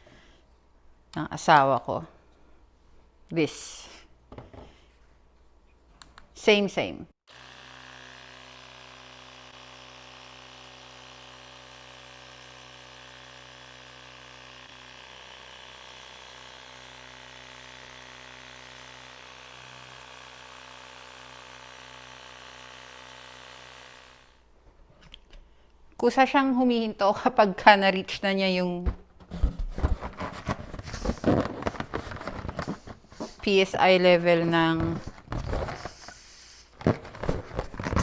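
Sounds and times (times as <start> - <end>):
electric tyre inflator motor hum: 7.3 - 24.5, 30.8 - 33.4, 35.6 - 36.8.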